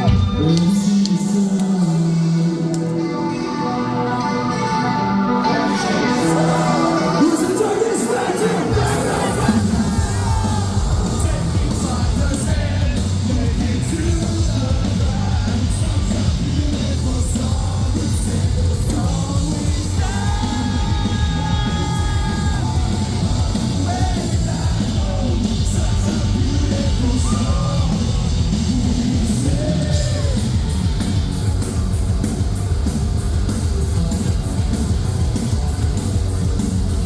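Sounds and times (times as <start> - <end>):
heavy metal band playing: 0.0 - 37.0
yelled vocals: 5.4 - 32.8.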